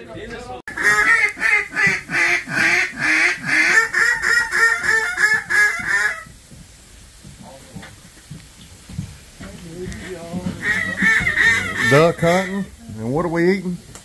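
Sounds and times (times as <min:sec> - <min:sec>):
duck quacks: 0:00.7 - 0:06.3, 0:10.0 - 0:12.8.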